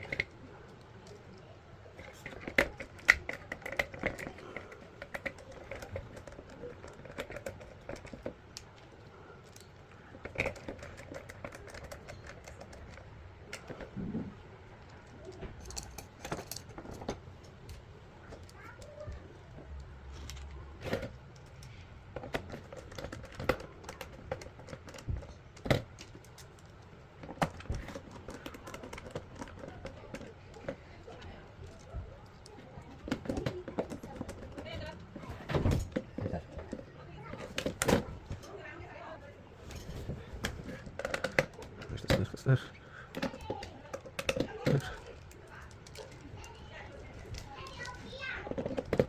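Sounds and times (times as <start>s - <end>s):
clicks of small parts handled: 14.8s - 34.8s.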